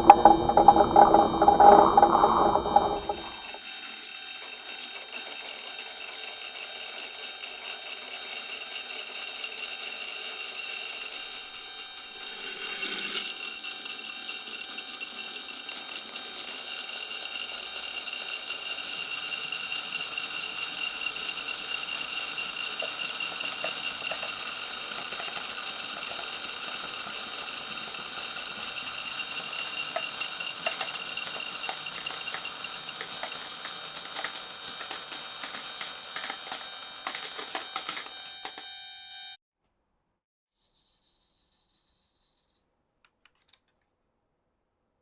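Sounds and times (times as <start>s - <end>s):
marbles rolling on wooden track: 0.0s - 3.4s, 4.8s - 11.4s, 12.0s - 38.6s
ringing hum: 0.0s - 39.4s
marbles clicking together: 12.2s - 38.6s.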